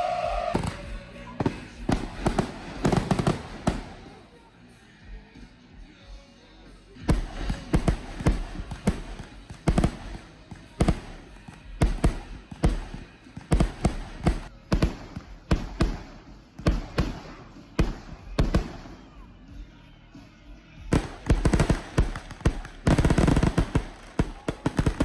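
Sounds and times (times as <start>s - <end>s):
fireworks bangs: 0.4s - 4.2s, 7.0s - 19.1s, 20.9s - 25.0s.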